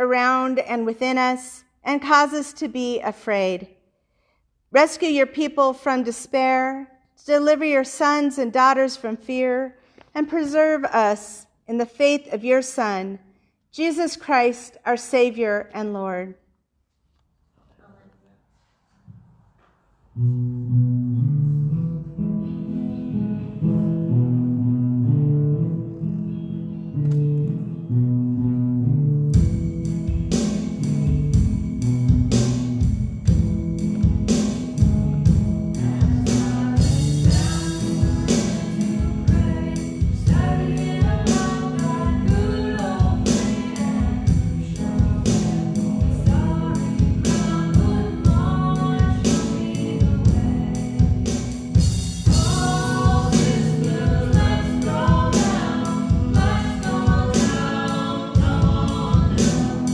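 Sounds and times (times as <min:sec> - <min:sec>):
drum beat and bass: 0:29.4 - 0:59.9
voices singing: 0:35.8 - 0:51.6, 0:52.3 - 0:59.9.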